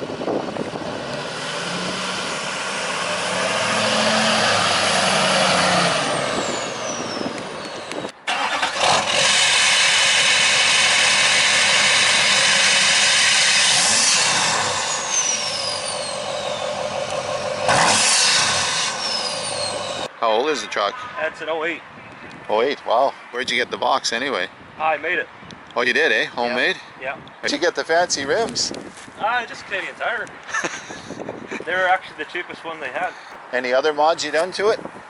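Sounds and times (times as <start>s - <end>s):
diesel engine revving: 0.2s - 20.1s.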